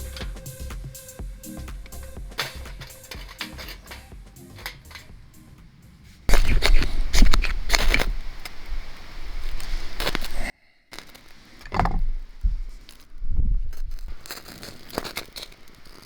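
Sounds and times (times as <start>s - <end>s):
heavy low rumble: 0.0s - 7.3s
handling clicks and rattles: 1.8s - 8.1s.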